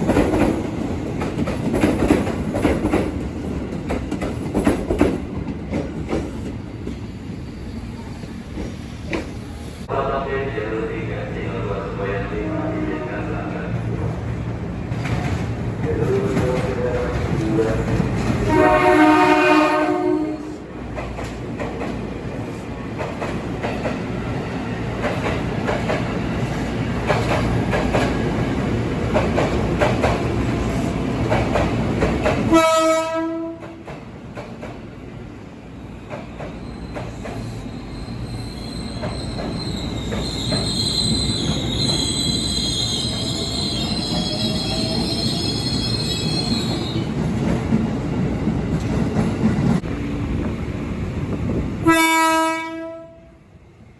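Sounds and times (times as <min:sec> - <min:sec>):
train wheels rumbling: 0:00.0 - 0:09.9, 0:12.7 - 0:53.2
train horn blasts: 0:18.4 - 0:20.6, 0:32.5 - 0:33.8, 0:51.8 - 0:53.4
wheels squealing: 0:36.6 - 0:47.1.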